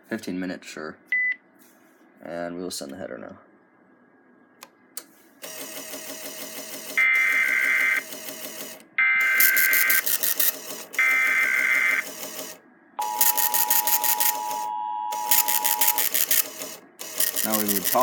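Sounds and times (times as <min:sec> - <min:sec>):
two-tone attention signal: 0:13.0 - 0:16.2.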